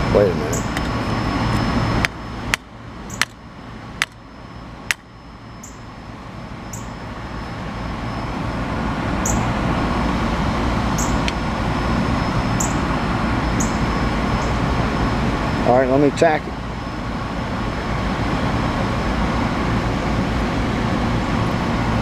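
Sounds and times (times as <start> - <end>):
steady low rumble: 0.0 - 22.0.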